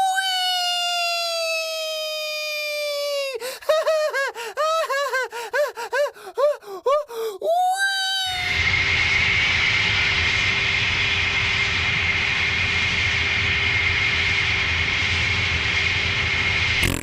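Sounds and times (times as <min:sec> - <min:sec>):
mechanical drone with high whine: 0:08.6 - 0:17.0.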